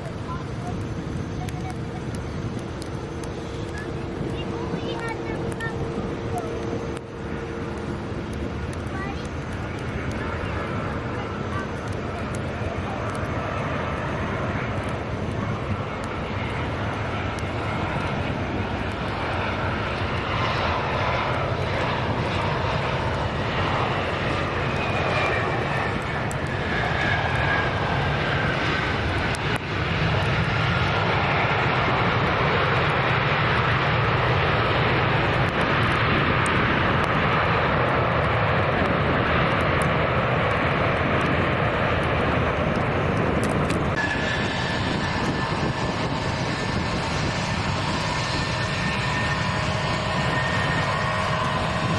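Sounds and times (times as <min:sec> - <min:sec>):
jet engines passing with whine: 0:00.0 - 0:51.9.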